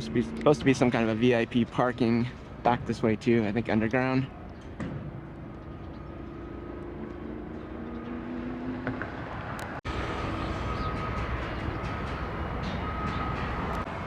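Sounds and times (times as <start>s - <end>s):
vehicle engine noise: 0.0s - 14.0s
steady high whine: 9.9s - 14.0s.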